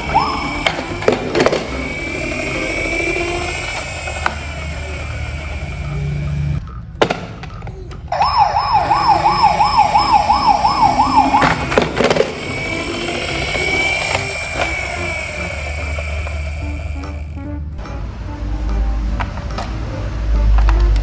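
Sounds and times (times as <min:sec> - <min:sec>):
electronic toy siren warbling: 0:00.0 - 0:06.6, 0:08.1 - 0:17.4
clicks: 0:00.0 - 0:07.6.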